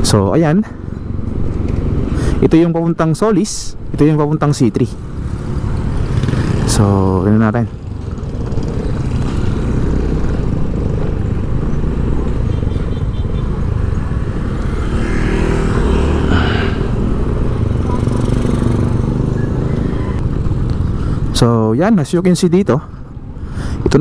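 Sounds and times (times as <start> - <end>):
motorcycles: 0.0 - 24.0
vehicle engines in traffic: 0.0 - 24.0.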